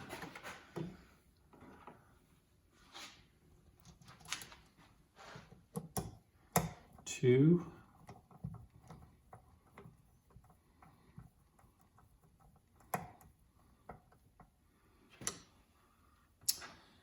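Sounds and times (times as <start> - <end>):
small clicks and taps of hand tools: 5.5 - 7.0, 7.8 - 15.6.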